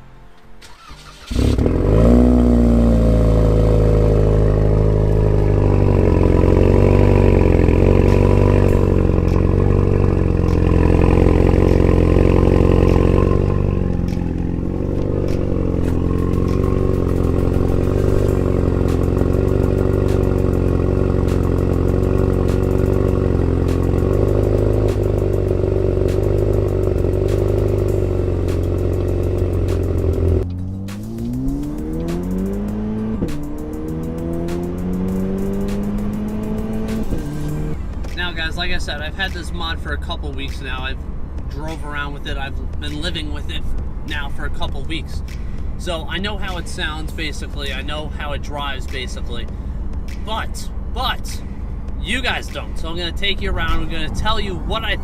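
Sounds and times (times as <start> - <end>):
car engine idling loudly: 1.3 - 30.4.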